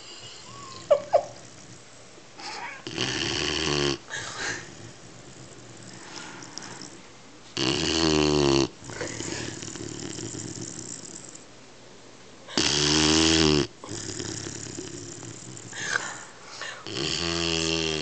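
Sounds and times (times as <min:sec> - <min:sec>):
puppy snoring: 0:00.0 - 0:11.5, 0:12.5 - 0:18.0
soft breathing: 0:04.1 - 0:07.1, 0:14.4 - 0:16.9.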